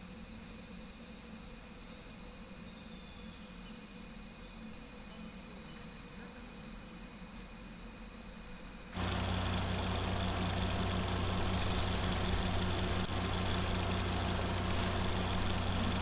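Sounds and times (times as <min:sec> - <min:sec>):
insects trilling: 0:09.0 - 0:16.0
low engine hum: 0:09.0 - 0:16.0.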